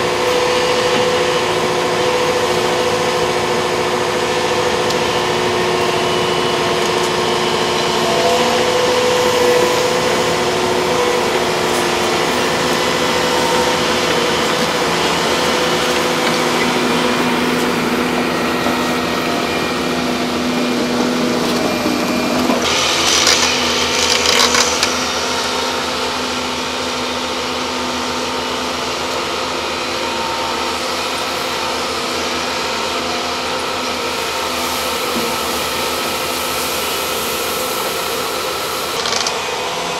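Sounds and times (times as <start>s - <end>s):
excavator diesel engines running: 0.0s - 39.9s.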